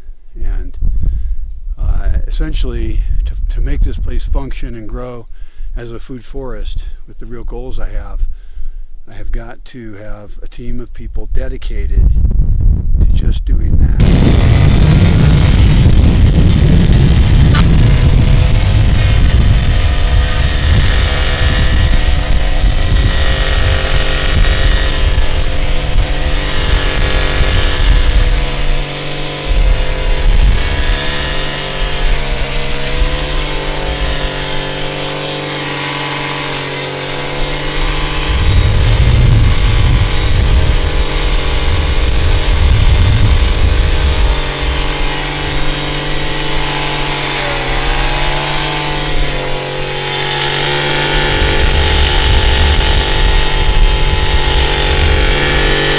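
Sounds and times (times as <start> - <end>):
chainsaw engine running: 14.0 - 55.9.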